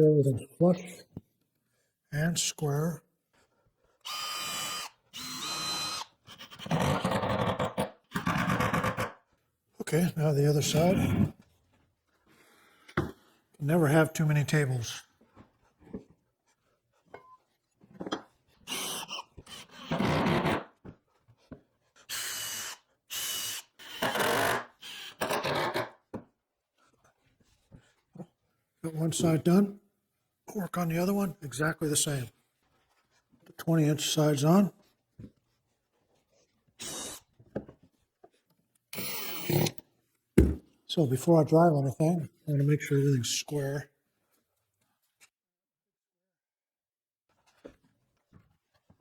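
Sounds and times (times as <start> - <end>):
cordless drill into wood: 4.0 - 9.1, 18.7 - 20.7, 22.1 - 25.9, 36.8 - 37.3, 38.9 - 39.8.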